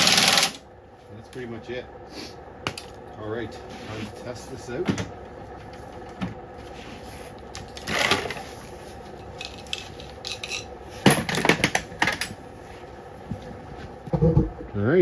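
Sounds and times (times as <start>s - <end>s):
metal tools clinking: 9.2s - 12.4s.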